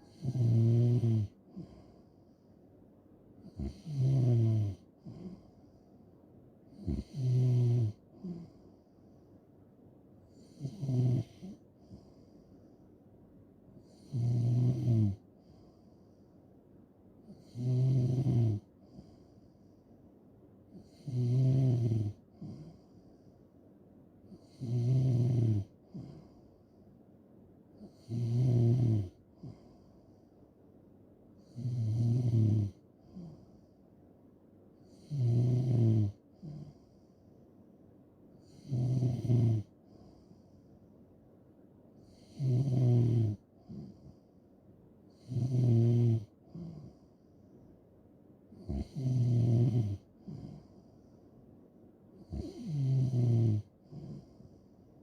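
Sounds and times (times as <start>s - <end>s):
person snoring: 0.0s - 1.9s, 3.5s - 5.5s, 6.8s - 8.6s, 10.4s - 12.1s, 13.9s - 15.2s, 17.3s - 19.1s, 20.8s - 22.8s, 24.4s - 26.4s, 27.8s - 29.6s, 31.4s - 33.5s, 34.9s - 36.9s, 38.5s - 40.1s, 42.1s - 44.1s, 45.1s - 47.1s, 48.6s - 50.8s, 52.2s - 54.5s.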